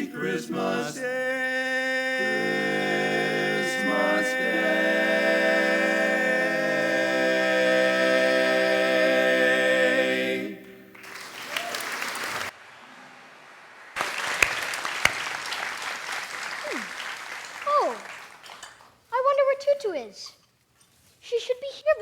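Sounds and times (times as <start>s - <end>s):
a cappella chorus singing: 0.0s - 11.0s
applause: 10.9s - 12.8s, 13.4s - 19.0s.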